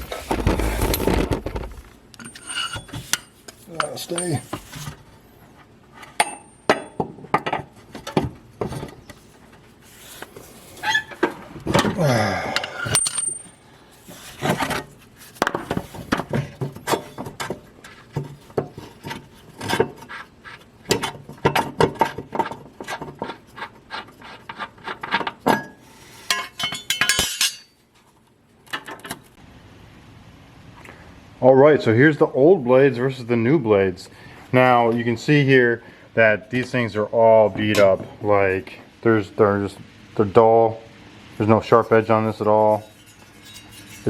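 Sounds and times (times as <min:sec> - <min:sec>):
metal tools clinking: 0:02.2 - 0:04.7, 0:12.6 - 0:13.6, 0:26.3 - 0:27.8, 0:42.7 - 0:44.0.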